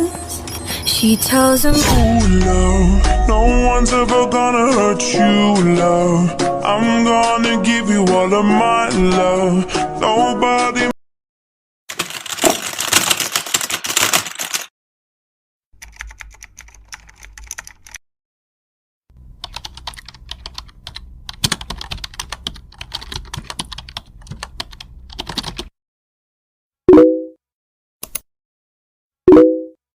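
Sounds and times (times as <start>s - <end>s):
low hum: 1.2s - 4.9s
computer keyboard typing: 11.9s - 14.7s, 15.8s - 18.0s, 19.4s - 25.7s.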